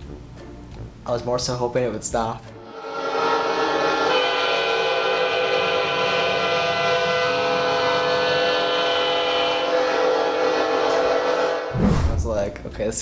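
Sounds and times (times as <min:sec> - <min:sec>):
train horn blasting: 0:02.6 - 0:11.8.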